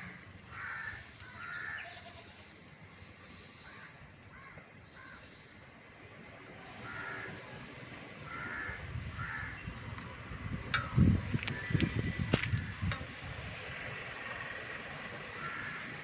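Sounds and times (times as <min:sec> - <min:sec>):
bird cawing: 0:00.0 - 0:02.2, 0:03.5 - 0:05.5, 0:06.7 - 0:07.5, 0:08.2 - 0:09.7, 0:15.3 - 0:16.0
handling noise and knocking: 0:10.7 - 0:13.2.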